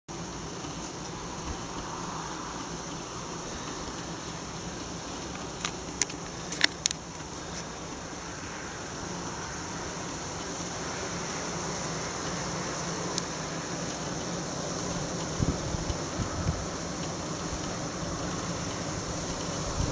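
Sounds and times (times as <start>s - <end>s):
honeybees buzzing: 0.1s - 19.9s
sharp clicks: 5.3s - 7.3s.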